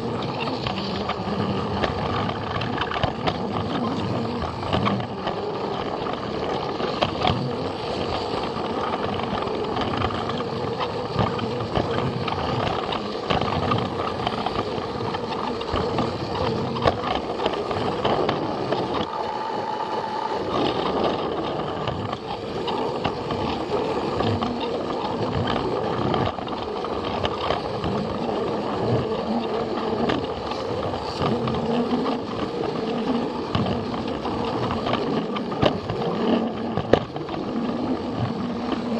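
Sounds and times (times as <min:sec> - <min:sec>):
toy train motor drone: 0:00.0 - 0:38.9
wheels clicking on plastic track: 0:00.0 - 0:38.9.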